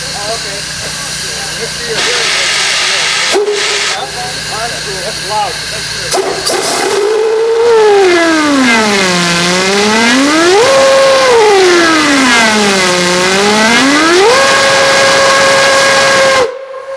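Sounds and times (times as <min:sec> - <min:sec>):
fire alarm whistle sliding pitch: 0:06.9 - 0:16.9.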